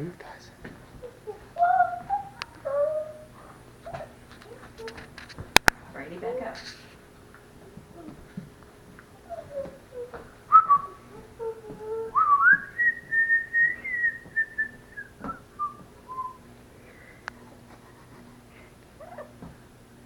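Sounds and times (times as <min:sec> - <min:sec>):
parrot whistling: 0:01.0 - 0:04.6, 0:09.2 - 0:16.5.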